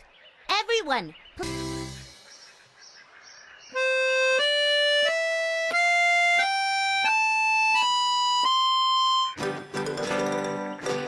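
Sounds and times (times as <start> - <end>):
accordion playing a rising scale: 3.8 - 11.0.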